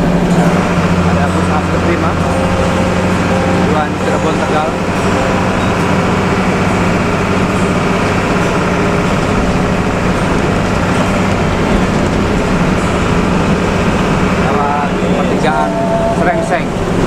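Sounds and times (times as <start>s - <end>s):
bus diesel engine droning: 0.0s - 17.0s
road noise: 0.0s - 17.0s.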